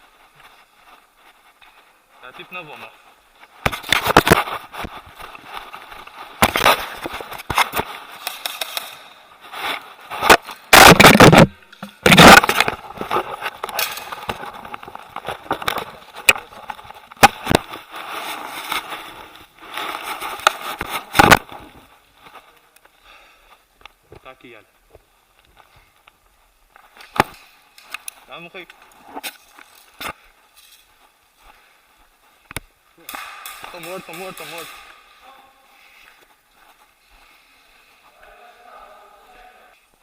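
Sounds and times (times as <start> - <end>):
scraping and rustling on microphone: 0.0 - 22.8.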